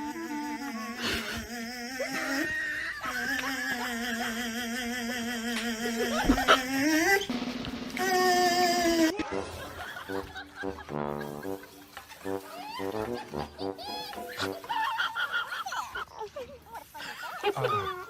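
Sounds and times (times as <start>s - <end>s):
drums: 6.1s - 14.9s.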